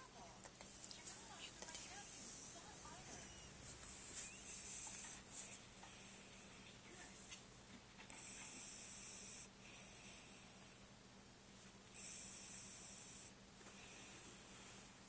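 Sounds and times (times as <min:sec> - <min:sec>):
pet snoring: 0:01.8 - 0:06.8, 0:08.1 - 0:10.8, 0:11.9 - 0:14.6.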